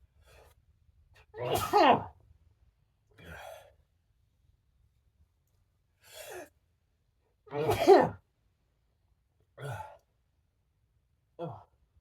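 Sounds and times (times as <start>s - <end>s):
person sneezing: 1.4s - 2.1s, 7.5s - 8.2s.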